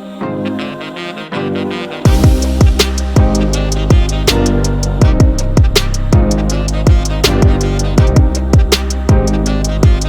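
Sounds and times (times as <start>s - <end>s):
music with steady beat: 2.1s - 10.0s.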